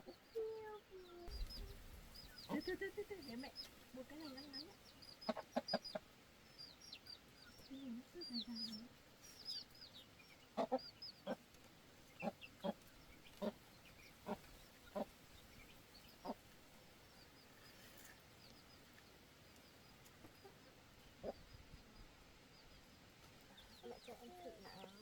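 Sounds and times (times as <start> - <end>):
faint high chirps: 0.0 - 11.2
hen clucking: 0.0 - 16.9, 20.0 - 21.5, 23.5 - 25.0.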